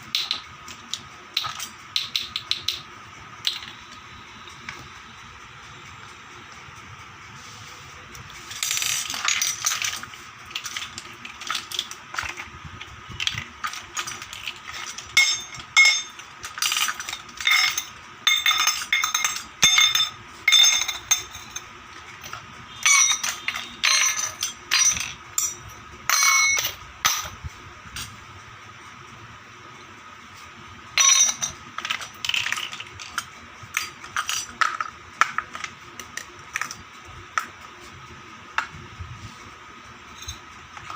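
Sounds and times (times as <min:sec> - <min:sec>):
plastic toy pieces clattering: 0:00.2 - 0:02.8, 0:08.4 - 0:27.3, 0:31.0 - 0:36.8.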